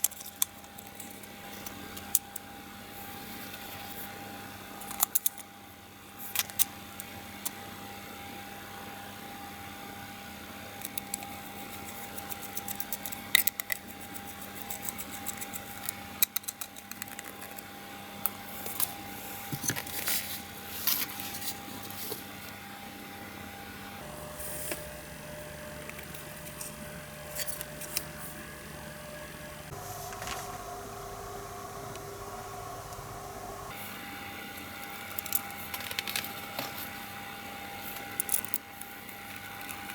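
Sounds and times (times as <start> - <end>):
faint steady hum: 0.0 - 39.9.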